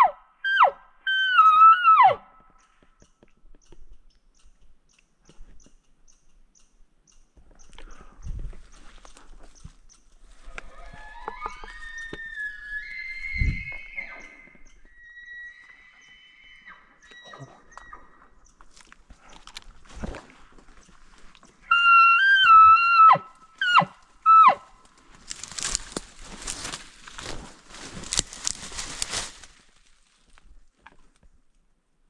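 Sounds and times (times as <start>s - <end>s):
elk bugling: 10.3s - 19.2s, 21.4s - 25.5s
rustling noise: 24.8s - 31.2s.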